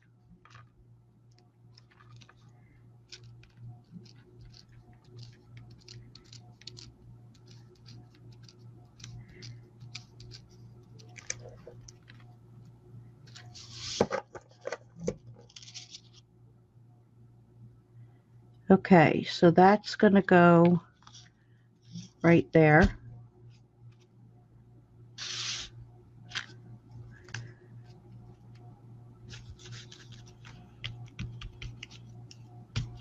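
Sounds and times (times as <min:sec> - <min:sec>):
paper rustling and crinkling: 0:01.8 - 0:02.5, 0:15.4 - 0:16.2, 0:29.3 - 0:32.1.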